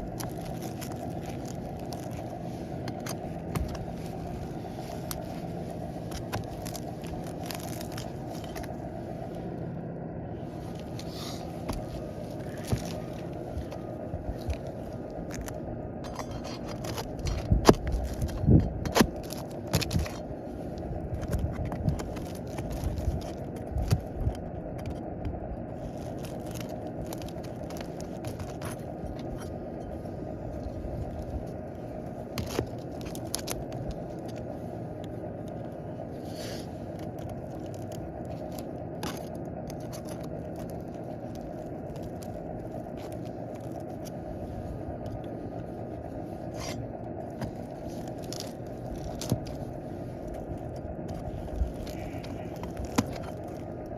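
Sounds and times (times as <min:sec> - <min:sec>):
shingles scraping and knocking: 0:00.0 - 0:09.4, 0:10.4 - 0:44.3, 0:46.4 - 0:53.9
low background rumble: 0:00.0 - 0:53.9.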